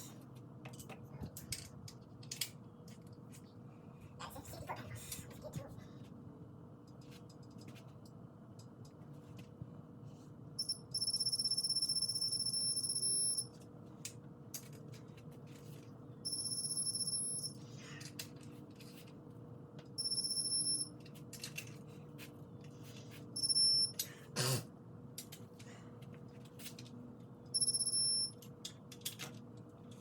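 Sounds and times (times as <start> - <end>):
torque wrench beeping: 16.3 - 17.6, 20.0 - 20.9, 23.4 - 24.0, 27.6 - 28.4.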